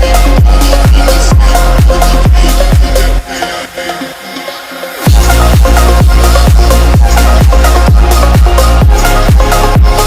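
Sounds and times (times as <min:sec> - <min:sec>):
four-on-the-floor kick drum: 0:00.0 - 0:03.0, 0:05.1 - 0:10.0
heavy sustained bass line: 0:00.0 - 0:03.3, 0:05.1 - 0:10.0
melodic synth: 0:00.0 - 0:10.0.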